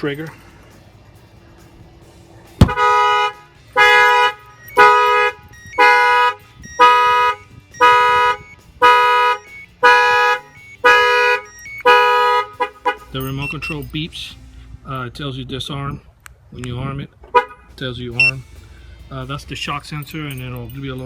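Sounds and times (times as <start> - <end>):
car alarm honks: 2.6 - 14.0, 17.3 - 18.4.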